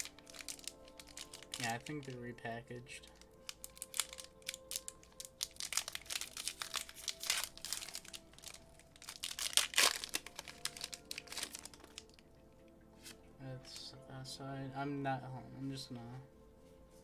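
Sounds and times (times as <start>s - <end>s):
foil wrapper crinkling: 0.0s - 2.2s, 3.0s - 12.2s
quiet background music: 0.0s - 17.0s.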